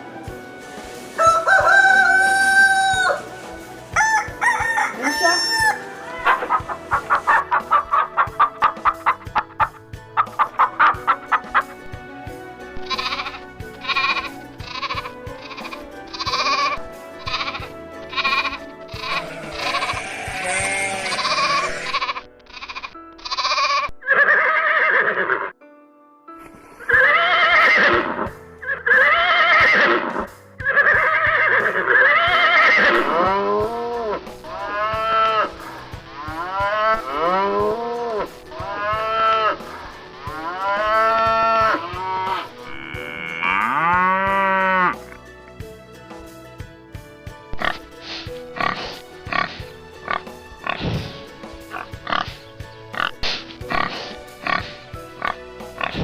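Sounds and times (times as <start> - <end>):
background music: 0.0 - 56.0
farm animals bleating: 12.8 - 25.5, 28.7 - 35.5, 36.2 - 39.6, 40.3 - 45.1, 53.7 - 56.0.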